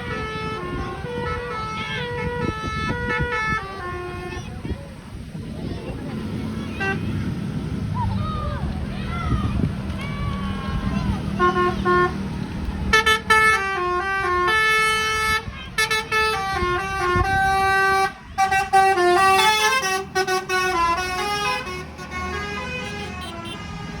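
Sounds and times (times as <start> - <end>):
multi-tone bus horn playing tune: 0.0 - 4.7, 6.7 - 7.5, 11.2 - 24.0.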